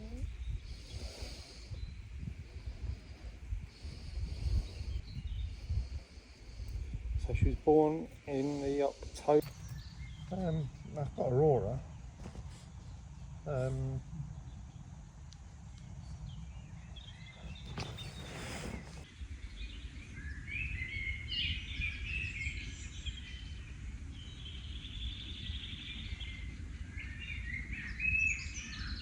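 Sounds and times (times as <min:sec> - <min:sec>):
steady low rumble: 0:00.0 - 0:20.4
birds chirping: 0:00.0 - 0:29.0
rustle: 0:08.1 - 0:29.0.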